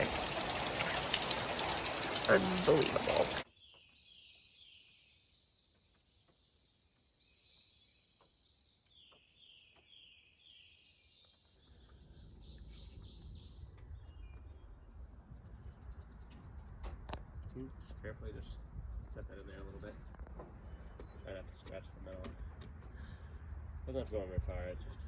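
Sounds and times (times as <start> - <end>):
songbird singing faintly: 0.0 - 18.7.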